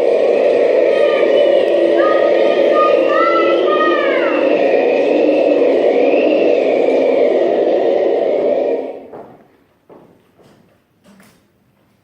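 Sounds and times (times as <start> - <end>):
thin wind whistle: 0.0 - 9.1
wind rushing: 0.0 - 9.4.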